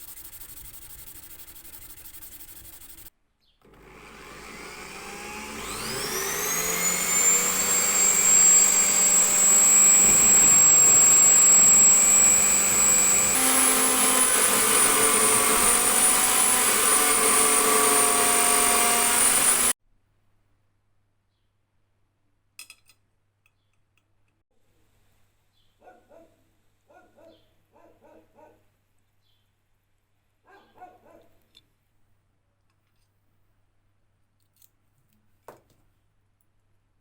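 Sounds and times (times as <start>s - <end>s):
high-speed power tool whining: 3.7s - 19.8s.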